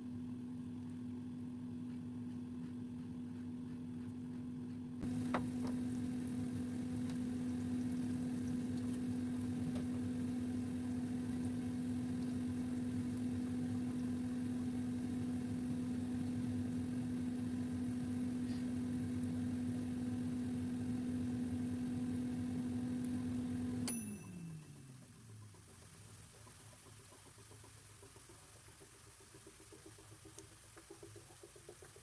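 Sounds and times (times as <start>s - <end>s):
microwave oven humming: 0.0s - 30.2s
fan motor winding down: 5.0s - 25.6s.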